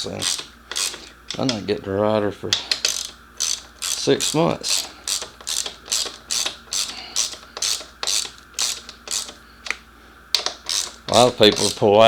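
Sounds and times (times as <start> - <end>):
ratchet wrench clicking: 0.0 - 1.6, 2.5 - 9.8, 10.4 - 12.0.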